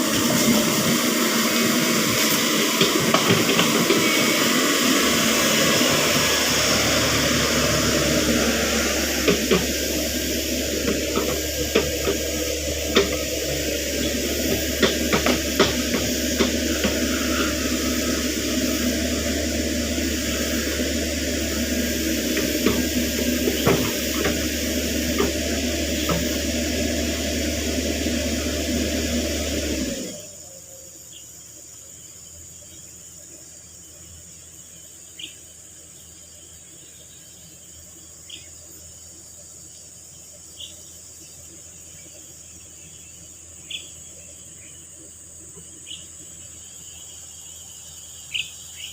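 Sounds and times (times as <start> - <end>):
cricket drone: 0.0 - 48.9
mini excavator running: 0.0 - 48.9.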